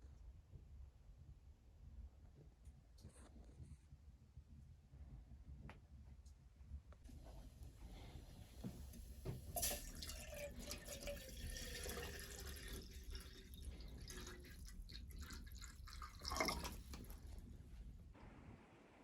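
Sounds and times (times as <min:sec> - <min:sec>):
water dripping and trickling: 0:08.6 - 0:17.5.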